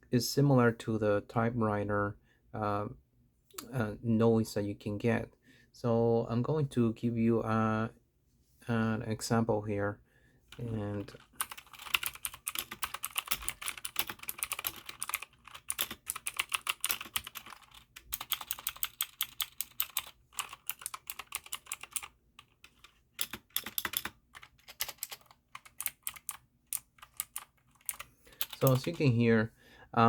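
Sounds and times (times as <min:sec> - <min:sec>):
mechanical keyboard typing: 0:10.5 - 0:29.1.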